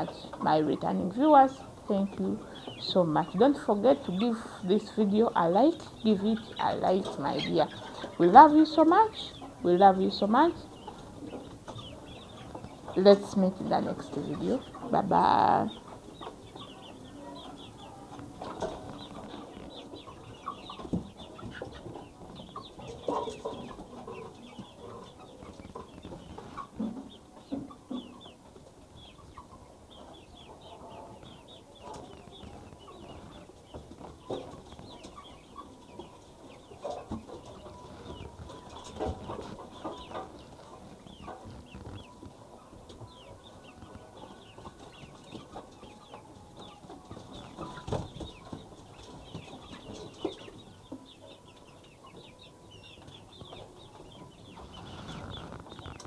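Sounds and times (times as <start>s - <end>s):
chickens clucking: 0.0s - 56.0s.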